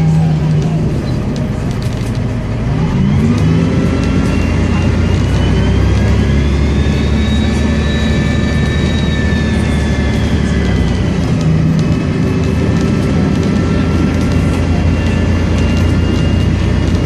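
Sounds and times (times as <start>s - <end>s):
bus engine pulling hard: 0.0s - 17.0s
turbocharger whistle: 4.1s - 10.9s.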